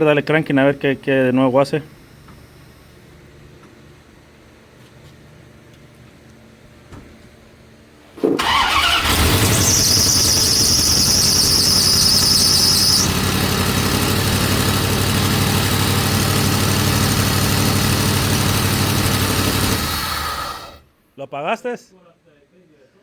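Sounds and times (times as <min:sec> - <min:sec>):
engine cranking and running: 0:08.3 - 0:20.8
high squeal: 0:08.7 - 0:13.2.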